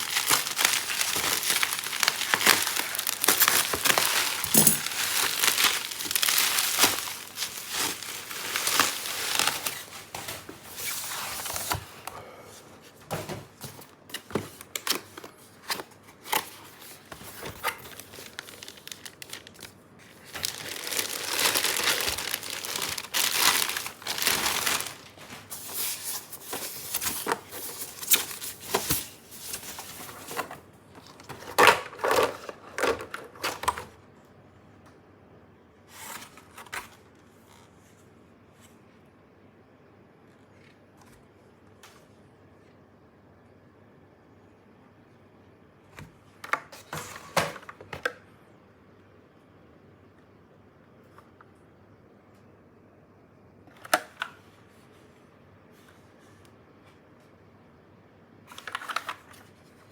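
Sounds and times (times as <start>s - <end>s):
plastic packaging crinkling: 0.0s - 11.8s, 14.5s - 33.8s.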